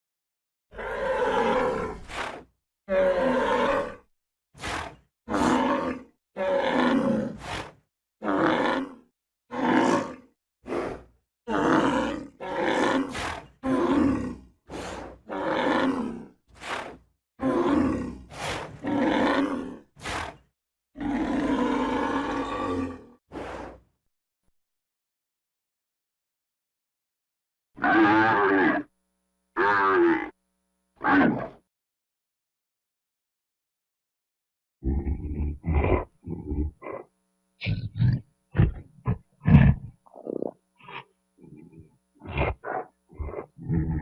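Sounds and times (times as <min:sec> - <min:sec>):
animal roaring: 0:00.7 - 0:23.7, 0:27.8 - 0:28.9, 0:29.6 - 0:30.4, 0:31.0 - 0:31.6, 0:34.8 - 0:44.0.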